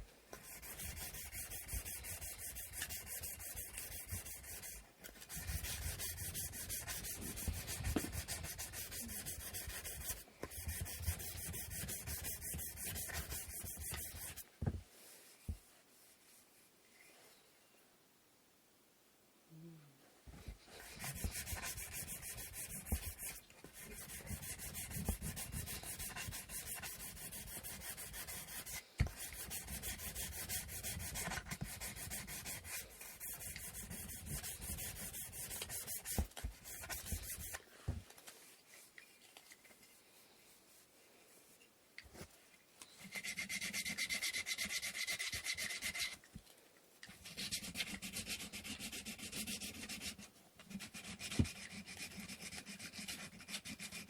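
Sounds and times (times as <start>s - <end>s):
sandpaper sanding wood: 0.4s - 14.4s, 20.8s - 37.6s, 43.1s - 46.2s, 47.2s - 50.2s, 50.8s - 54.0s.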